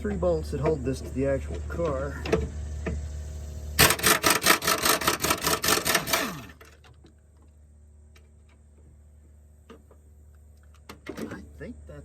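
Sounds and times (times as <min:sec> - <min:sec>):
impact wrench hammering: 0:03.8 - 0:06.6.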